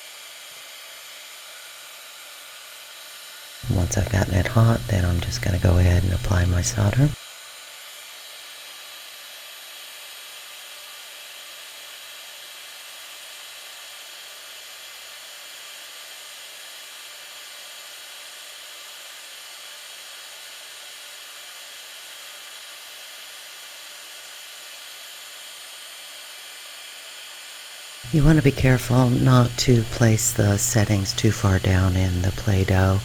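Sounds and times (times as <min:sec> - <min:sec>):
heat gun blowing hot air: 0:24.5 - 0:33.0.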